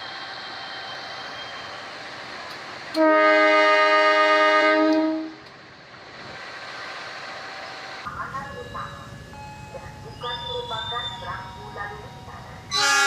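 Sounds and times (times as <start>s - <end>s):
train horn blast: 2.9s - 5.5s, 12.7s - 13.0s.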